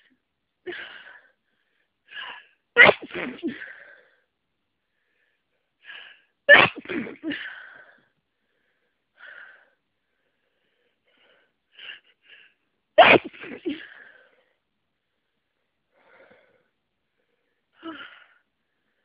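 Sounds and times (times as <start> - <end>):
person sneezing: 2.8 - 3.8, 6.5 - 7.6, 13.0 - 14.0.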